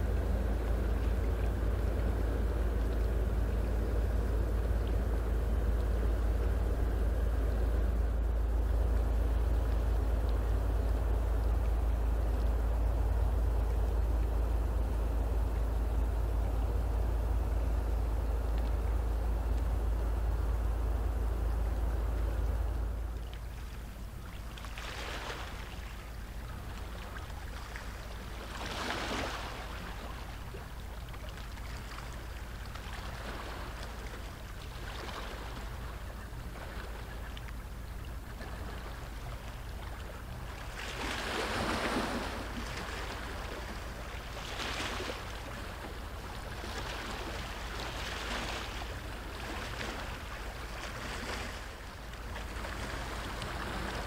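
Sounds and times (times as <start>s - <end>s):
ship diesel engine drone: 0.0s - 54.0s
waves washing against bank: 23.3s - 54.0s.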